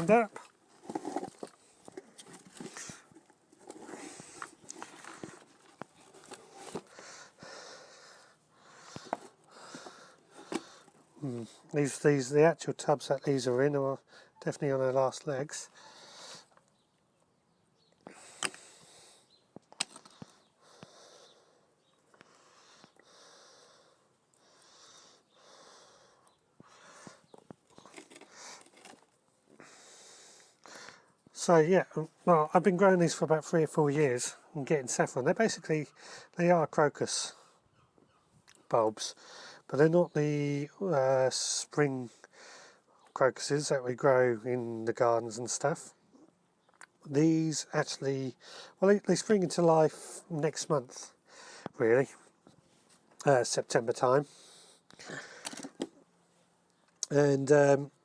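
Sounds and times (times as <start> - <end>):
soil rustling and crumbling: 0.0 - 7.3, 27.0 - 29.6.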